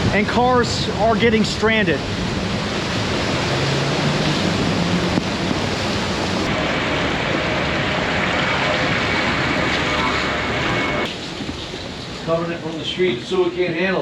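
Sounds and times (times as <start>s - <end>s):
floodwater rushing: 0.0s - 14.0s.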